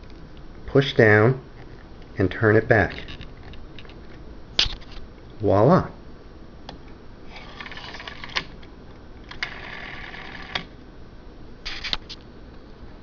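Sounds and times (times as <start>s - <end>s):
rotary dial whirring: 7.3s - 10.7s.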